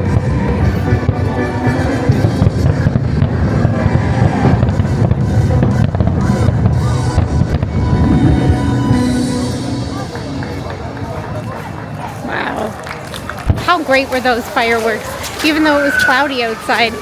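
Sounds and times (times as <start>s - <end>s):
music playing: 0.0s - 12.7s
fireworks bangs and booms: 0.0s - 15.4s.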